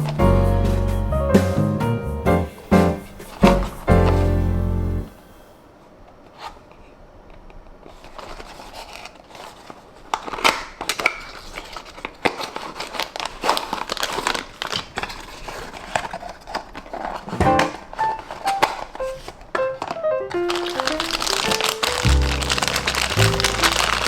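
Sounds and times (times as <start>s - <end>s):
toy packaging crinkling: 7.9s - 24.0s.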